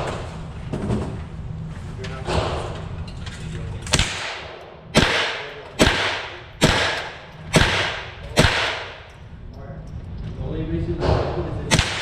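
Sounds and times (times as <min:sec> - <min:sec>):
rifle shots with echo: 0:03.9 - 0:09.2, 0:11.7 - 0:12.0.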